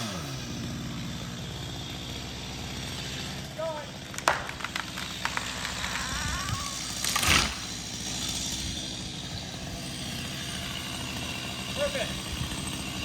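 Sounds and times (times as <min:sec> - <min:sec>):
chainsaw idling: 0:00.0 - 0:13.0
tree crashing to the ground: 0:04.0 - 0:08.5.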